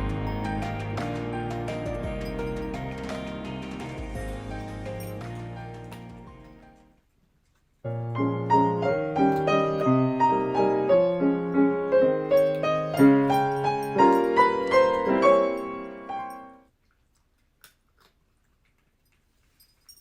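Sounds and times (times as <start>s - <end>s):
gentle piano melody: 0.0s - 6.9s, 7.9s - 16.6s.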